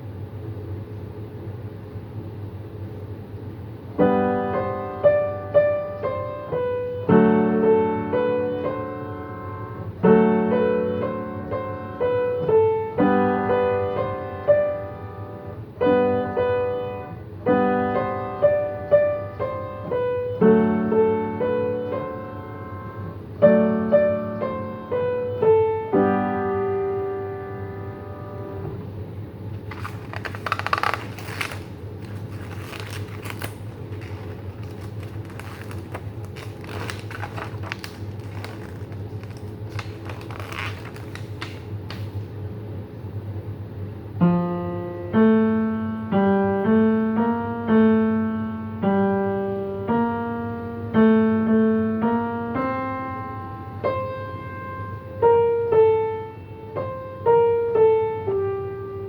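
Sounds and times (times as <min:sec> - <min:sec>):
low steady hum: 0:00.0 - 0:59.0
piano playing: 0:04.0 - 0:41.9, 0:44.2 - 0:59.0
rustling and clicks: 0:29.6 - 0:42.2.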